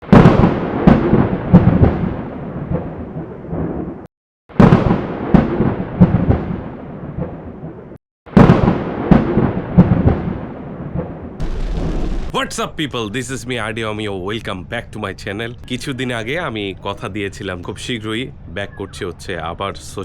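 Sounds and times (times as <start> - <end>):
booming thuds: 11.4 - 12.7.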